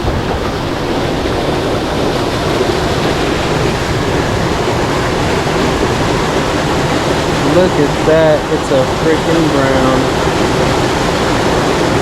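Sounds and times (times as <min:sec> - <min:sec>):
creek water rushing: 0:00.0 - 0:12.0.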